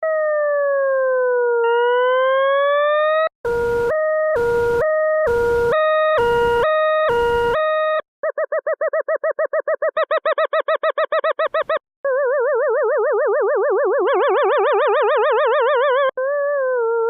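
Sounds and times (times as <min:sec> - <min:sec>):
electronic siren tone: 0:00.0 - 0:08.0, 0:12.0 - 0:17.0.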